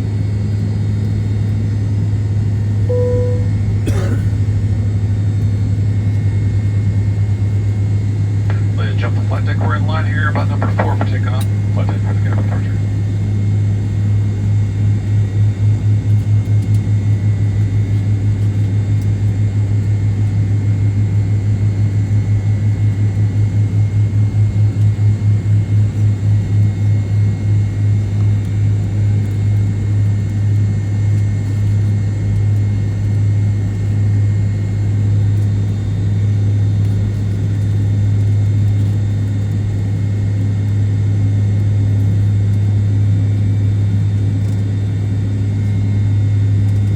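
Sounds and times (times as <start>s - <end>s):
faint high engine whine: 0.0s - 16.7s
jet engine cabin hum: 2.9s - 5.6s, 7.4s - 13.3s.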